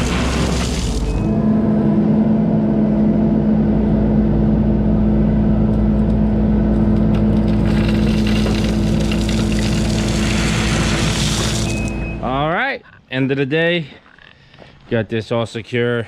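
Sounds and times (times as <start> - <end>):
diesel engine running: 0.0 - 12.6.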